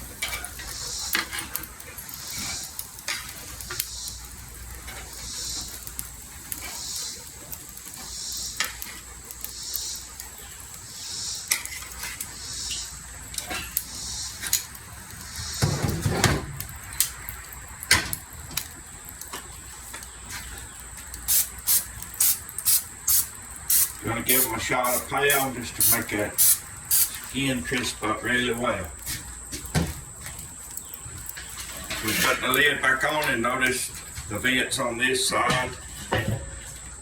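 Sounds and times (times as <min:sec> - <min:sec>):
chicken sizzling on grill: 0:00.0 - 0:37.0
cooking spray hissing: 0:00.0 - 0:37.0
tongs clicking on grill grate: 0:00.1 - 0:10.7, 0:11.5 - 0:15.2, 0:16.6 - 0:27.9.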